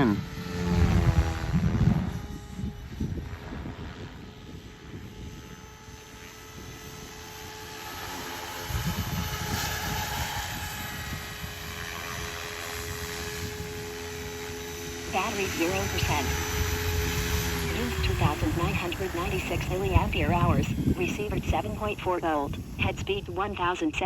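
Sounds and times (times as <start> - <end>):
helicopter motor and rotor whine: 0.0 - 24.0.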